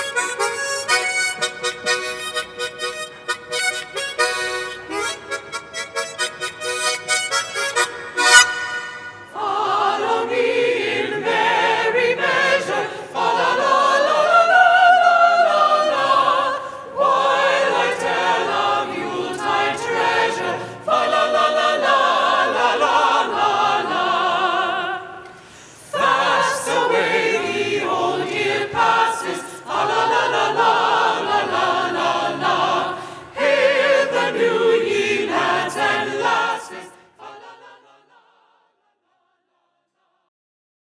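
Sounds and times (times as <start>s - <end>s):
choir singing: 8.2s - 40.3s.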